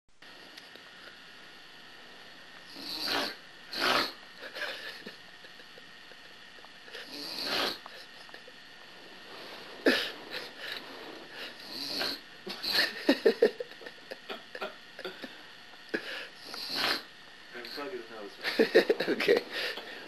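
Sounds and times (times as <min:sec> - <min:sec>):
person snoring loudly: 0:02.6 - 0:04.9, 0:06.9 - 0:08.0, 0:09.8 - 0:13.4, 0:16.0 - 0:17.1.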